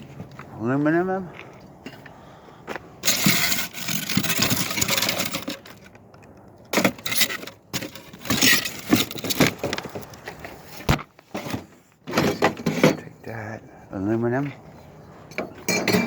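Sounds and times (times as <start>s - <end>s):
scrap metal clattering: 3.0s - 5.9s, 6.7s - 13.2s, 14.7s - 16.0s.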